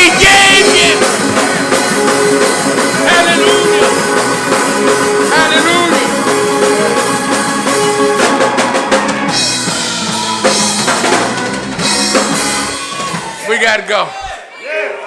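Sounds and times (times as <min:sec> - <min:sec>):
held chords: 0:00.0 - 0:12.9
drum kit playing: 0:00.0 - 0:14.0.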